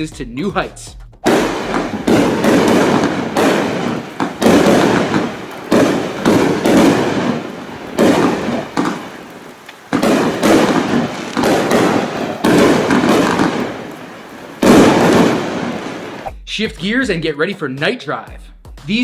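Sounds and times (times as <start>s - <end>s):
firework shot blasts with crackle: 1.2s - 16.3s.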